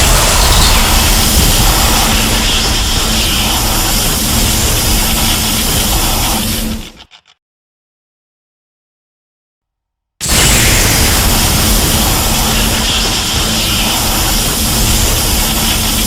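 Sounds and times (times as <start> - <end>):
monster roar with deep rumble: 0.0 - 3.8
steady low hum: 0.0 - 6.8.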